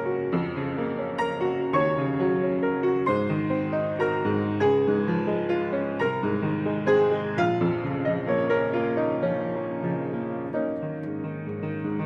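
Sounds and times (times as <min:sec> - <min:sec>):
slow piano-like keyboard music: 0:00.0 - 0:12.0.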